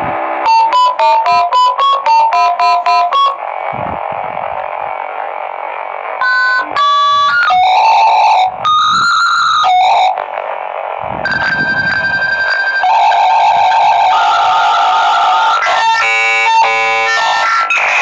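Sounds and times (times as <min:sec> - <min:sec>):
bursts of static: 0:00.0 - 0:18.0
modem handshake tones: 0:00.4 - 0:03.4, 0:06.2 - 0:10.3
touch-tone dialing beeps: 0:06.2 - 0:10.1, 0:11.3 - 0:13.0.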